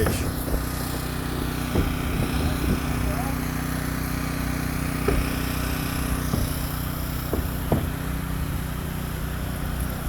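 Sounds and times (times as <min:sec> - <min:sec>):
sharp knocks: 0:00.0 - 0:03.2, 0:04.6 - 0:08.2
engine running: 0:00.0 - 0:10.0.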